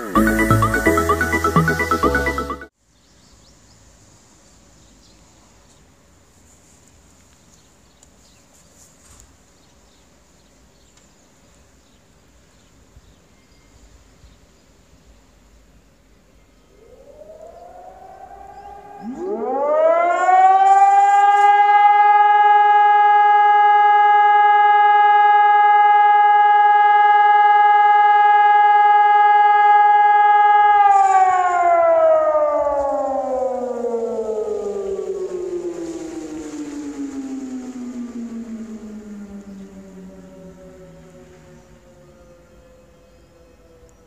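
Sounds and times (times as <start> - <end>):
civil defence siren: 0.0 - 2.7, 16.6 - 44.0.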